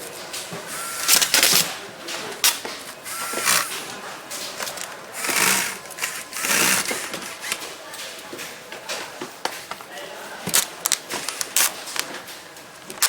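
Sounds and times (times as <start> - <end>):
powered screwdriver whirring: 0.6 - 1.7, 2.9 - 3.9, 4.6 - 7.7
brief whines: 3.1 - 3.8.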